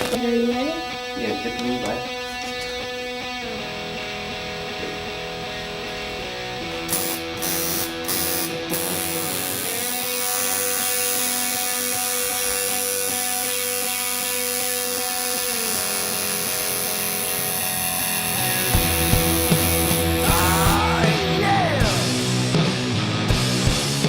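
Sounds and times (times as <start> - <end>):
electric guitar music: 0.0 - 24.0
amplifier hum: 15.4 - 22.6.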